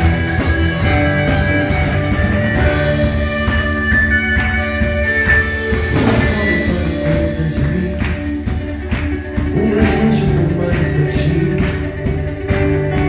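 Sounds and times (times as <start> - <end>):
bass: 0.0 - 13.0
drum kit: 0.0 - 13.0
guitar chords: 0.0 - 13.0
sustained keyboard notes: 0.0 - 13.0.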